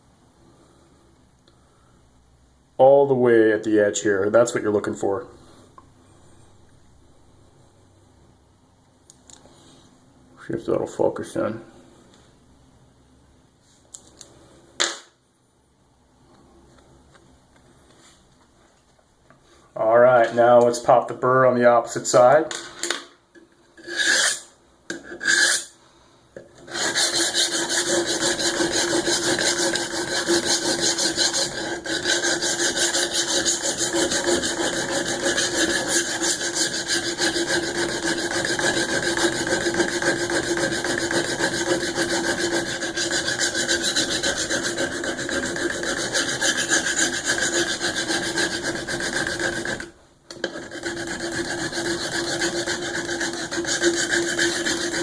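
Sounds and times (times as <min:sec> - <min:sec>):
knife blade scraping on sharpener: 0:23.8 - 0:25.8, 0:26.6 - 0:55.0.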